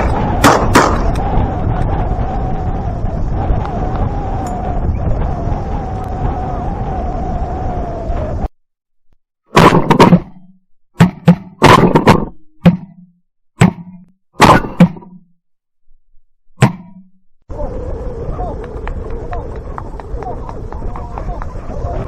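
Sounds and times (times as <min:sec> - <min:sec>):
wavering humming drone: 0:01.0 - 0:08.5.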